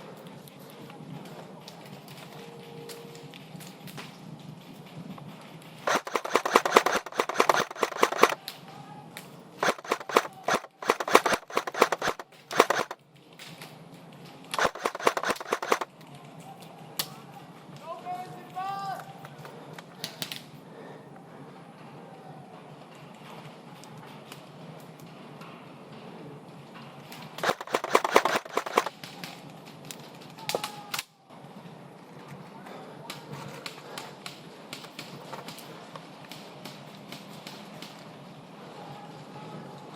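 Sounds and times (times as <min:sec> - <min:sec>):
airsoft rifle firing bursts: 0:05.8 - 0:08.5, 0:09.6 - 0:13.0, 0:14.5 - 0:15.9, 0:27.4 - 0:29.4.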